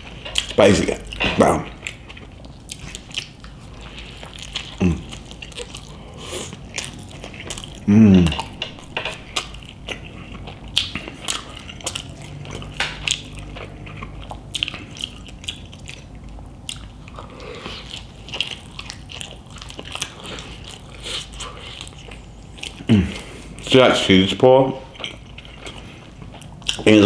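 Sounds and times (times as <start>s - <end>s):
close-up chewing with mouth clicks: 0.0s - 23.7s, 24.9s - 27.0s
lip smacks: 2.7s - 16.1s.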